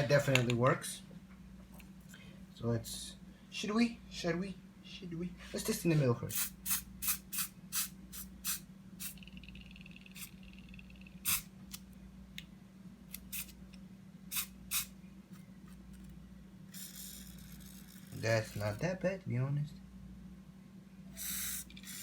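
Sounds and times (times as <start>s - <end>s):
steady low hum: 0.0s - 22.0s
spray paint can spurts: 11.2s - 11.5s, 14.3s - 14.9s, 16.7s - 18.8s, 21.2s - 22.0s.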